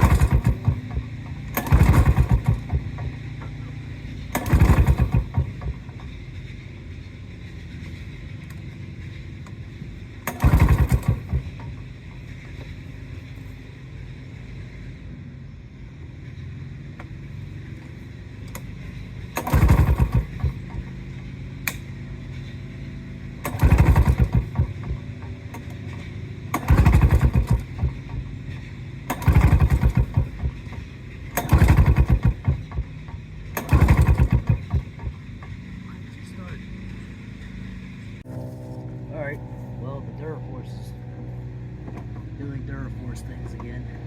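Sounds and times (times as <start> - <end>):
mower engine pull-start cranking: 0.0 - 3.6, 4.2 - 6.2, 10.2 - 13.4, 18.4 - 21.9, 23.4 - 35.7
steady low hum: 0.0 - 44.0.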